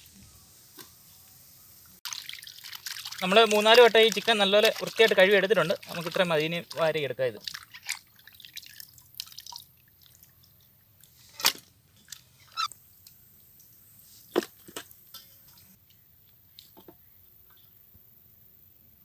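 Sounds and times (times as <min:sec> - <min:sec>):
wet handling of raw chicken: 0:02.1 - 0:10.8.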